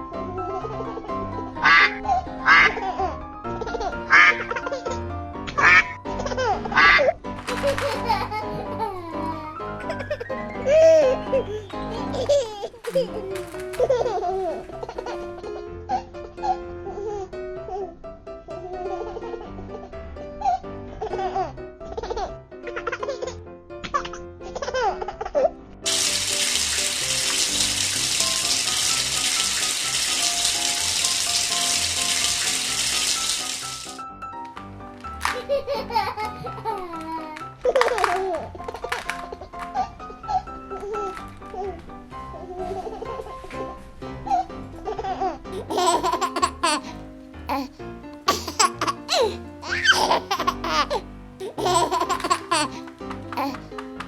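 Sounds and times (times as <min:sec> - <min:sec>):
light background music: 0:00.0 - 0:54.0
baby giggling: 0:05.7 - 0:15.3, 0:35.2 - 0:41.8, 0:44.9 - 0:47.7, 0:48.3 - 0:53.8
running water: 0:25.9 - 0:34.0, 0:48.3 - 0:53.8.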